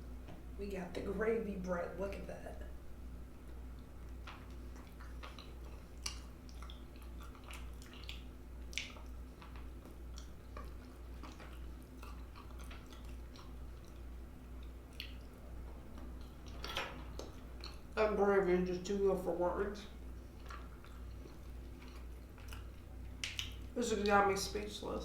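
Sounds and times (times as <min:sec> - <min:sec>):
person chewing with wet smacks: 0:03.4 - 0:18.1, 0:19.9 - 0:24.7.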